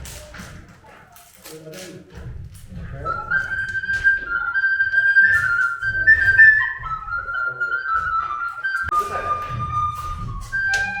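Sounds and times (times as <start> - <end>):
high flute-like melody: 2.8 - 11.0.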